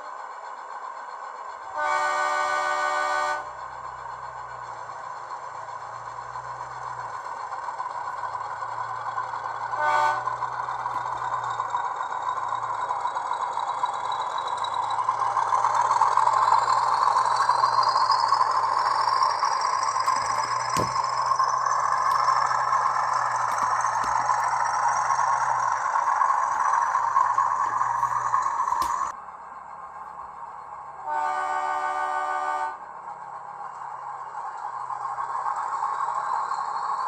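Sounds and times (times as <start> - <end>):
model locomotive engine sound: 0.0 - 37.0.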